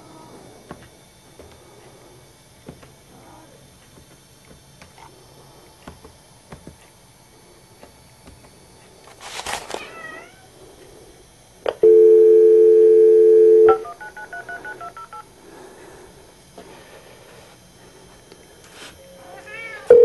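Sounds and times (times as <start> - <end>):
telephone dial tone: 11.8 - 15.2
cat meowing: 19.3 - 19.9.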